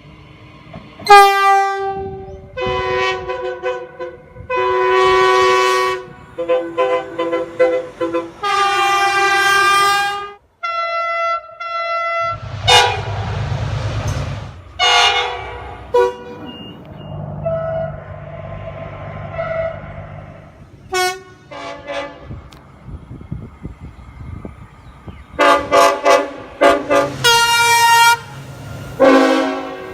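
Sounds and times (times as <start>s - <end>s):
rumble of passing train: 0.0s - 10.4s, 12.1s - 29.9s
train horn blasts: 1.0s - 13.3s, 14.8s - 16.5s, 19.3s - 20.1s, 20.9s - 22.4s, 25.4s - 28.4s, 29.0s - 29.9s.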